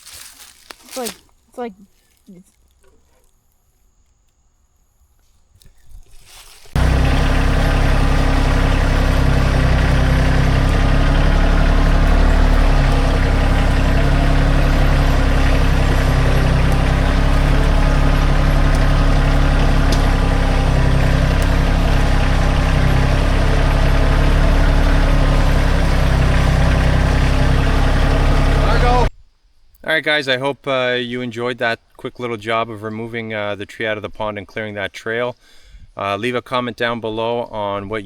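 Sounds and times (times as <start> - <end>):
engine idling: 6.8 - 29.1.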